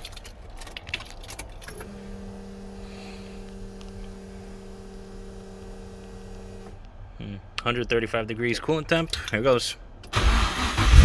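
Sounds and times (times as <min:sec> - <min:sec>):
car keys jangling in ignition: 0:00.0 - 0:02.1
steady electrical hum: 0:00.0 - 0:10.2.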